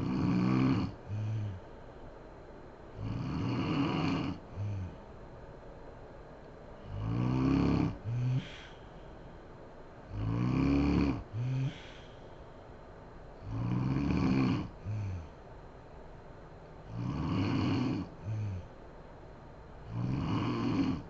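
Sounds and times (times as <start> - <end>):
woman snoring: 0.0 - 1.6, 3.0 - 5.0, 6.8 - 8.7, 10.1 - 12.1, 13.4 - 15.4, 16.9 - 18.7, 19.8 - 21.0.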